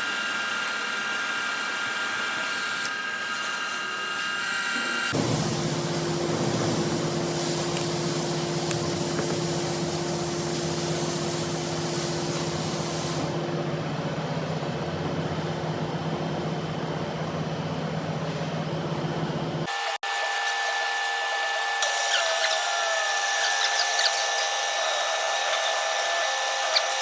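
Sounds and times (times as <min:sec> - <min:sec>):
metal lathe running: 0:19.7 - 0:27.0.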